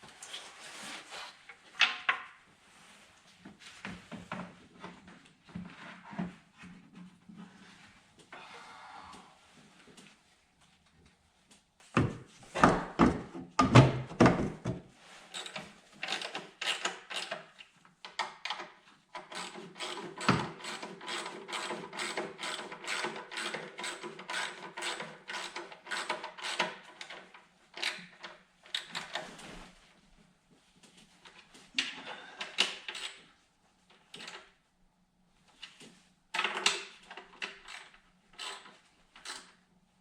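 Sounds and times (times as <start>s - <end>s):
ratchet clicking: 37.6s - 39.5s.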